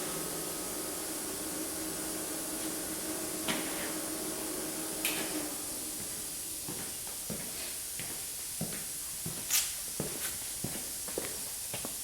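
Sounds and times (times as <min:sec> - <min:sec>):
low machinery hum: 0:00.0 - 0:09.4
steady hiss: 0:00.0 - 0:12.0.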